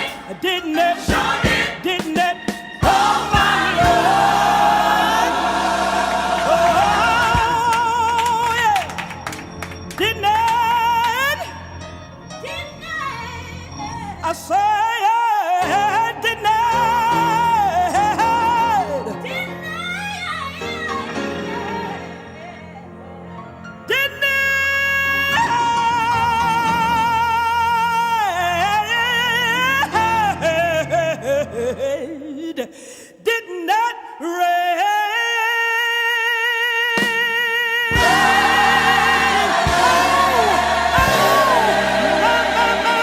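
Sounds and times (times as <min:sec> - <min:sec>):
band playing: 0:00.0 - 0:10.7, 0:37.9 - 0:43.0
gospel band playing: 0:00.0 - 0:12.8, 0:13.8 - 0:32.0, 0:36.9 - 0:43.0
drum hits: 0:01.1 - 0:04.5, 0:37.9 - 0:42.0.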